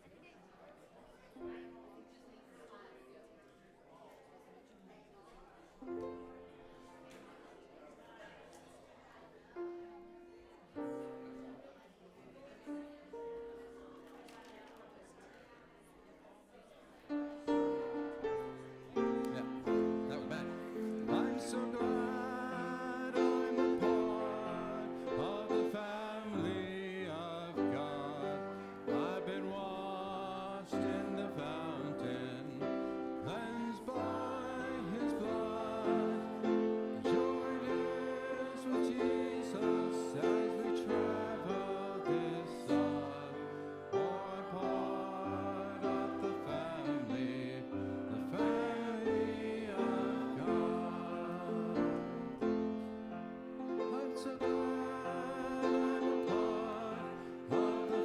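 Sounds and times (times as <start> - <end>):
gospel singing: 17.1 - 58.0
keyboard accompaniment: 17.4 - 58.0.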